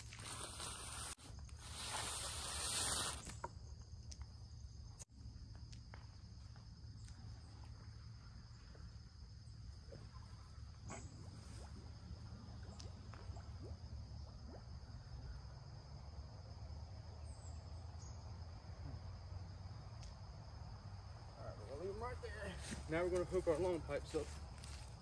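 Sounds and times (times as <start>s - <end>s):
rushing hiss: 0.0s - 3.4s.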